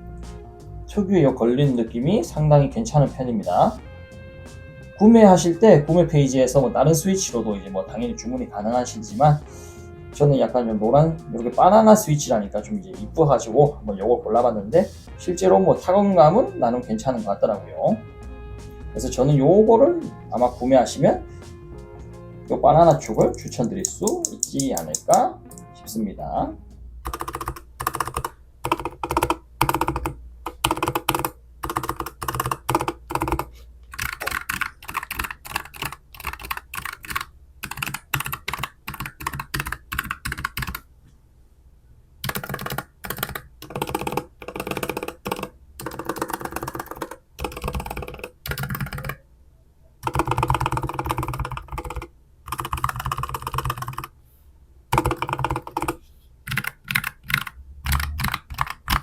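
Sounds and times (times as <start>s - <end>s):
mechanical keyboard typing: 23.1s - 25.2s, 27.0s - 40.8s, 42.2s - 49.2s, 50.0s - 54.1s, 54.9s - 59.0s.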